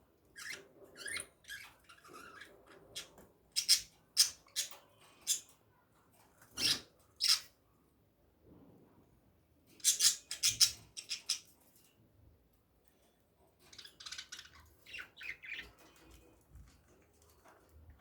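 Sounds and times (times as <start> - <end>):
birds chirping harshly: 9.8 - 11.5, 13.6 - 16.3.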